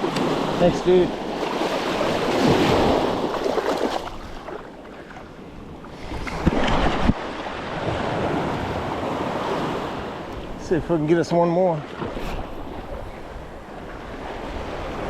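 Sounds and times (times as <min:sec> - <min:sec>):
ocean surf washing in: 0:00.0 - 0:04.3, 0:05.4 - 0:15.0
wind on microphone: 0:05.2 - 0:11.0, 0:11.9 - 0:15.0.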